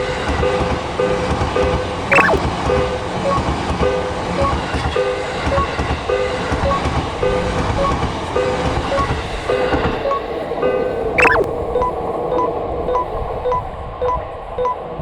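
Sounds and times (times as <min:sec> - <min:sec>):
level crossing alarm ringing: 0:02.1 - 0:10.4, 0:11.2 - 0:14.8.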